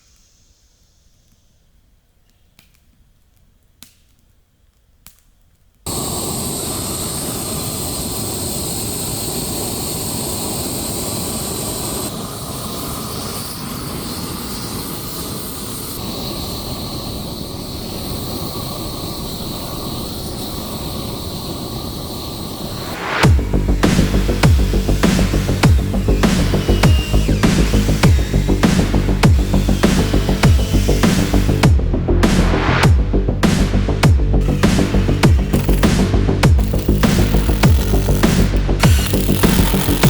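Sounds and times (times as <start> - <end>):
power saw whining: 22.7 - 32.1, 33.1 - 40.0.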